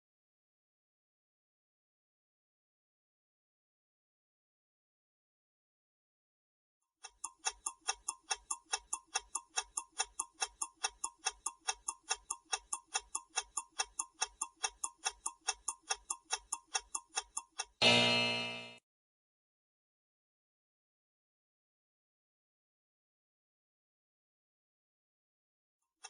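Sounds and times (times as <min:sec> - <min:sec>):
clock-like timer ticking: 0:07.0 - 0:18.8
loud time-up tone: 0:17.8 - 0:18.8.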